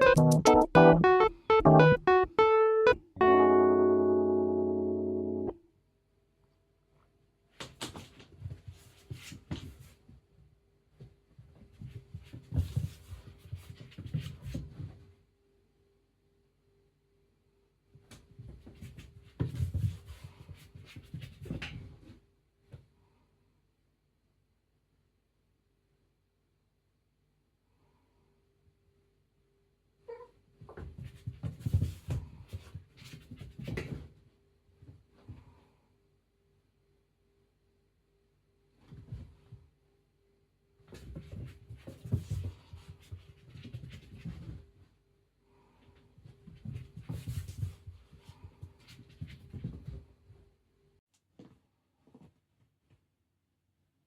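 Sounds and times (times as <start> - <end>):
cat paws pattering on floor: 30.6 - 34.2, 40.9 - 45.0, 46.0 - 50.5.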